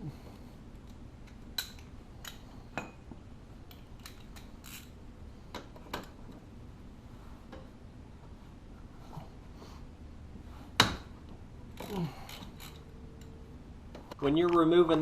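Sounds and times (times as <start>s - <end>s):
faint background hum: 0.0s - 15.0s
metal tools clinking: 11.8s - 13.4s.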